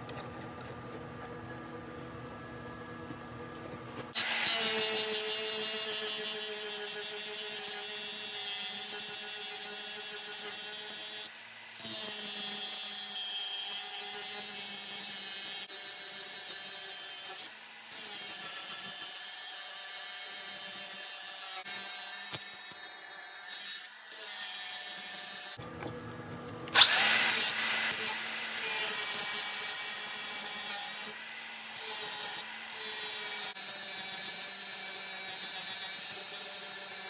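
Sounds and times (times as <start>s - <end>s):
power tool harsh high hiss: 4.2s - 15.6s, 26.8s - 37.0s.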